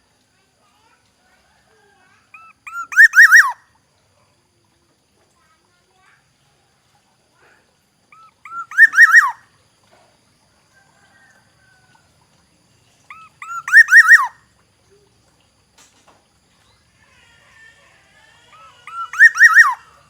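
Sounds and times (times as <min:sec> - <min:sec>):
bird fluty whistled phrases: 0:02.3 - 0:03.6, 0:08.1 - 0:09.4, 0:13.1 - 0:14.4, 0:18.5 - 0:20.0.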